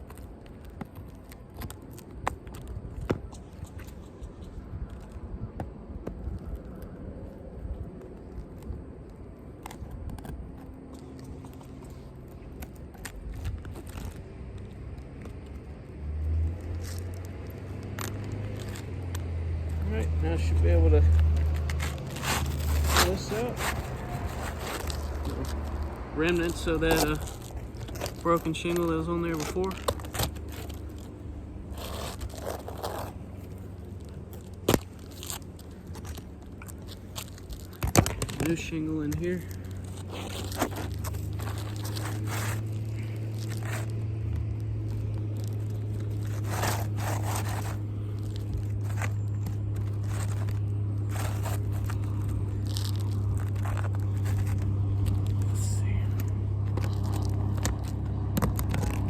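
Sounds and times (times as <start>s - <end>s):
low steady hum: 0.0s - 59.0s
tool scraping roof shingle: 19.8s - 59.0s.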